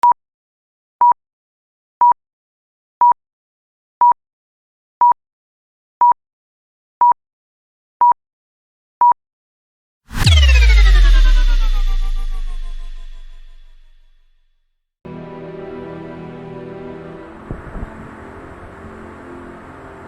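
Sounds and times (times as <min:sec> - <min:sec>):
deep boom with falling tones: 0:10.1 - 0:13.9
electronic intro music: 0:10.1 - 0:13.9
short high electronic beeps: 0:10.2 - 0:13.8.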